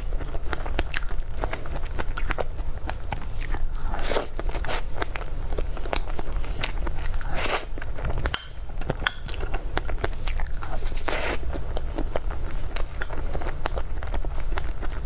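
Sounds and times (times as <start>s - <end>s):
chewing and biting dessert: 0.0s - 15.0s.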